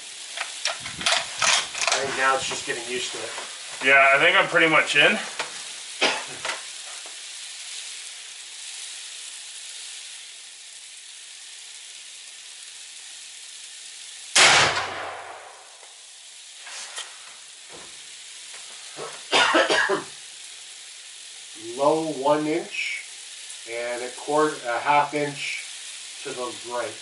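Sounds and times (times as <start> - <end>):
steady hiss: 0.0 - 27.0
small clicks and knocks: 0.3 - 2.0, 6.4 - 7.2
rifle shot: 14.4 - 15.7.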